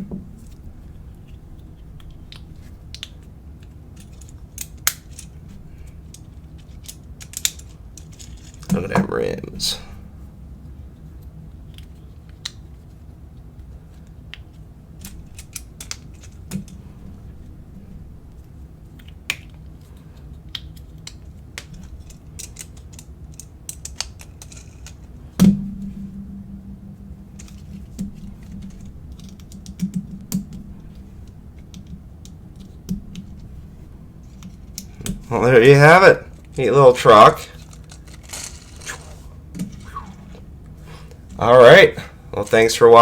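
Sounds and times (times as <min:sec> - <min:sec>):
plastic pieces clicking: 0:06.1 - 0:08.8, 0:19.0 - 0:25.2, 0:37.5 - 0:39.9
louder knock: 0:25.4 - 0:30.5.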